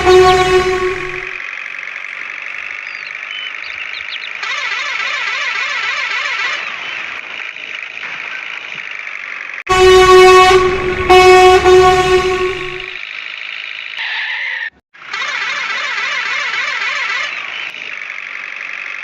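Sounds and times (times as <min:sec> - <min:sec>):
loud horn blast: 0:00.0 - 0:01.4, 0:09.7 - 0:13.0.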